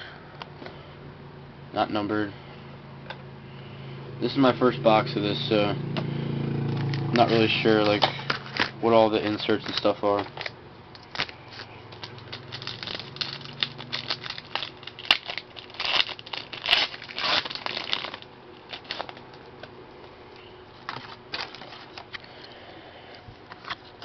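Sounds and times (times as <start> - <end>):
wrapper crinkling and rustling: 6.8 - 19.5, 20.8 - 22.3.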